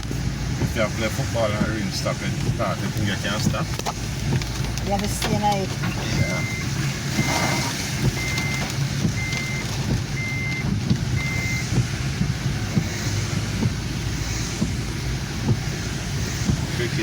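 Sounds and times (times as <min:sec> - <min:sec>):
car driving in rain: 0:00.0 - 0:17.0
high electronic beeps: 0:05.9 - 0:11.8.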